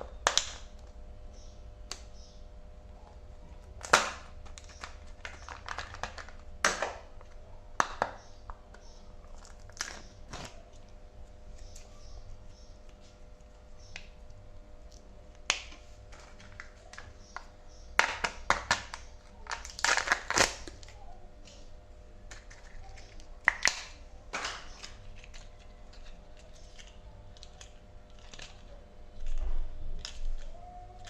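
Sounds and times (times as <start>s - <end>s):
foil wrappers crinkling: 3.6s - 8.2s, 9.2s - 11.9s, 15.0s - 21.6s, 22.3s - 31.0s.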